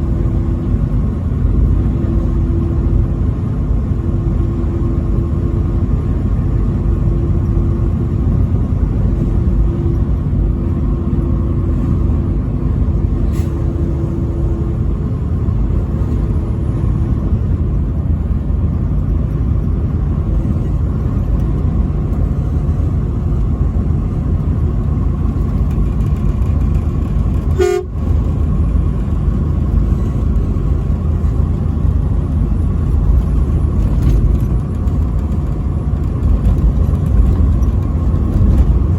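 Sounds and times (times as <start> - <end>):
truck engine and road rumble: 0.0 - 38.9
two-note horn: 27.6 - 27.9.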